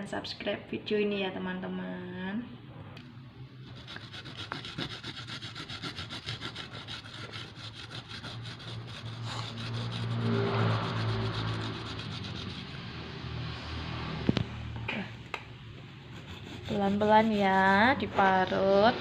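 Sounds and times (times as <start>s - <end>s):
ginger scraping on grater: 3.7s - 12.7s, 16.2s - 18.0s.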